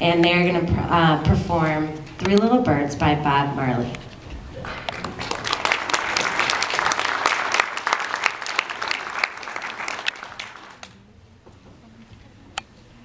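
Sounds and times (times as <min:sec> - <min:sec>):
audience applauding: 0:04.6 - 0:11.0.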